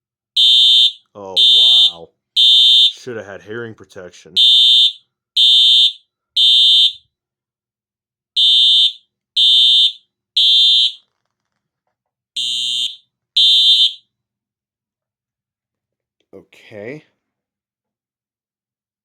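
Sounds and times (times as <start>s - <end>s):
fire alarm horn beeping: 0.4s - 3.0s, 4.4s - 7.1s, 8.4s - 11.0s, 12.4s - 14.1s.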